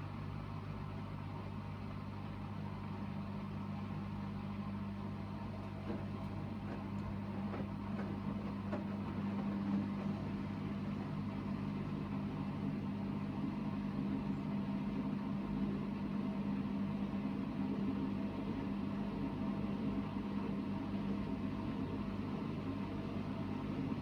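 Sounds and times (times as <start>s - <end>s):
washing machine spinning: 2.4s - 24.0s.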